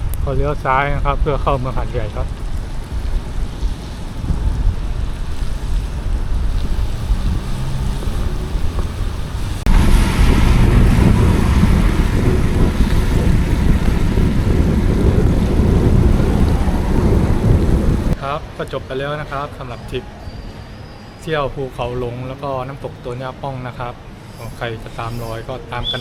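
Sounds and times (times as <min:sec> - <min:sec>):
wind rushing over microphone: 0:00.0 - 0:18.2
low rumble of traffic: 0:00.0 - 0:26.0.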